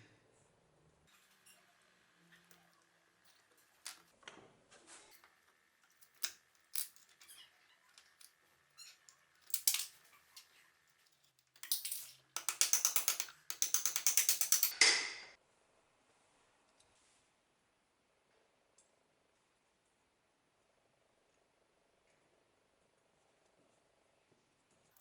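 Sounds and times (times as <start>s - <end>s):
sharp clicks of metal parts: 5.2s - 7.3s, 9.0s - 15.3s.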